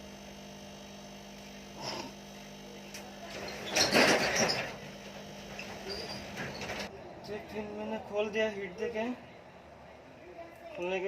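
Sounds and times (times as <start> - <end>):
steady electrical hum: 0.0 - 6.9
scraping and clatter: 3.2 - 6.9.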